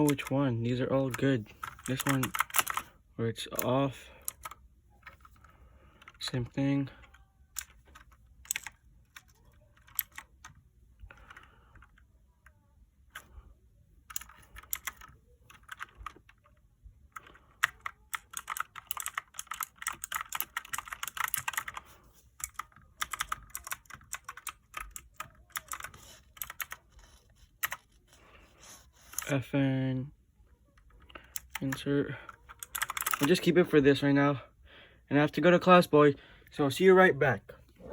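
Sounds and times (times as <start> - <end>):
mechanical keyboard clicking: 1.1 - 2.9, 7.1 - 10.6, 14.1 - 16.6, 17.2 - 21.8, 22.4 - 26.8, 27.6 - 27.8, 32.3 - 33.4.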